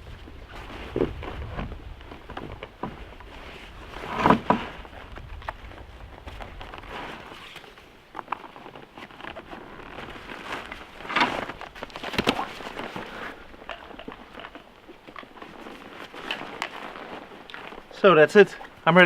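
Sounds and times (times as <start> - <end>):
backpack fabric rustling: 0.4 - 18.8
strap scrapes and clicks: 6.4 - 17.9.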